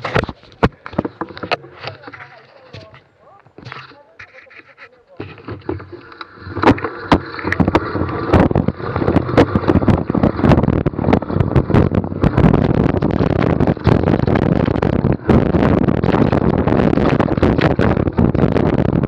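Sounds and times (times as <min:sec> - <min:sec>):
bike knocks and rattles: 0:05.2 - 0:19.0
wind on microphone: 0:05.4 - 0:19.0.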